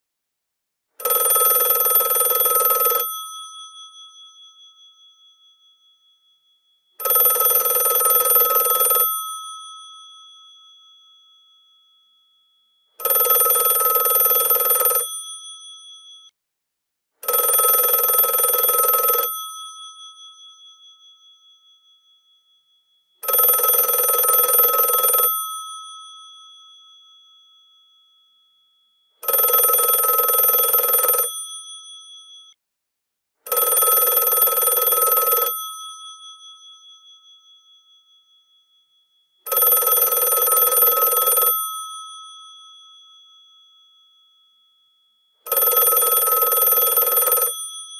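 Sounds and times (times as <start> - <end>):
telephone bells ringing: 1.0 - 3.6, 7.0 - 9.8, 13.0 - 15.4, 17.2 - 19.8, 23.2 - 26.0, 29.2 - 31.6, 33.5 - 35.8, 39.5 - 42.2, 45.5 - 47.9.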